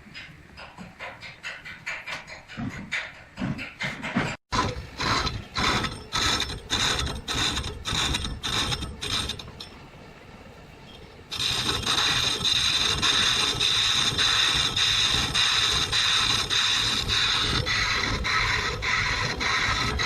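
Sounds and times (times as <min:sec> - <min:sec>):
mechanical strokes: 0:04.5 - 0:09.8, 0:10.9 - 0:20.0.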